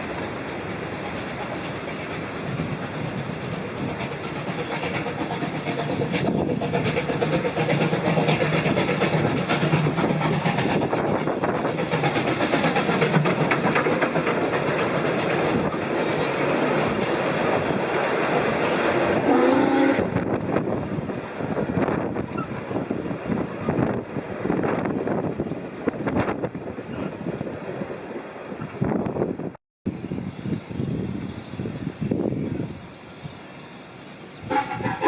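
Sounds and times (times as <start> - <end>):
wheels clicking over rail joints: 0.0 - 19.3
steam train rumbling past: 0.0 - 35.0.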